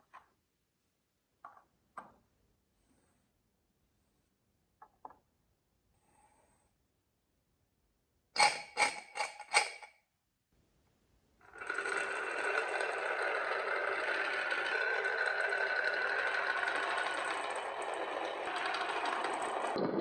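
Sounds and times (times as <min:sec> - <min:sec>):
marbles rolling along track: 0:11.4 - 0:20.0
marble clacks: 0:11.5 - 0:20.0.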